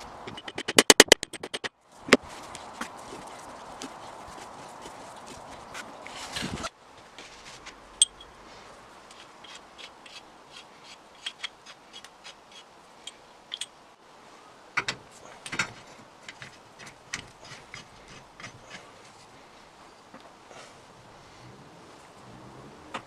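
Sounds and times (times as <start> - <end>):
hand tool clicking and tapping: 0.3 - 1.7.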